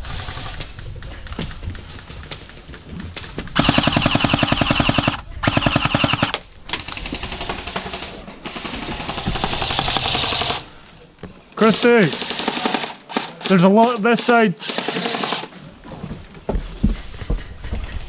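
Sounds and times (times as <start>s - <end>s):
airsoft gun firing full auto: 3.6s - 10.7s.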